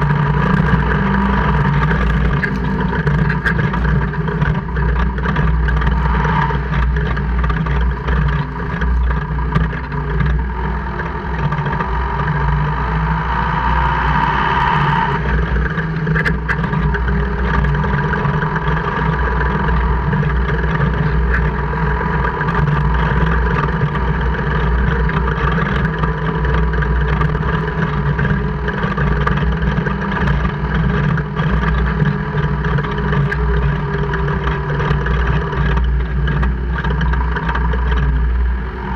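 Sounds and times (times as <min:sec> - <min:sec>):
engine low rumble with whine: 0:00.0 - 0:38.9.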